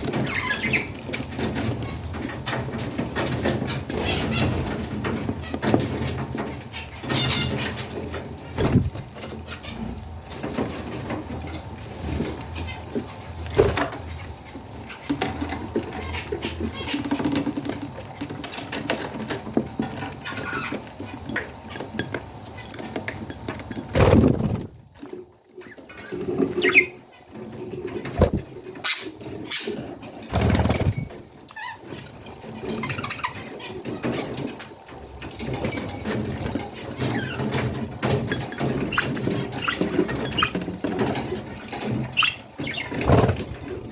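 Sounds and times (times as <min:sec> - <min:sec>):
budgerigars chirping: 0:25.6 - 0:27.0, 0:28.2 - 0:31.7, 0:38.6 - 0:40.7, 0:41.9 - 0:43.4.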